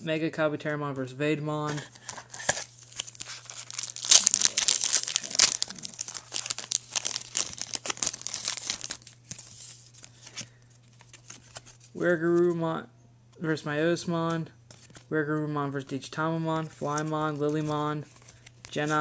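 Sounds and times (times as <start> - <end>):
card pack wrapper crinkling: 1.9 - 11.9.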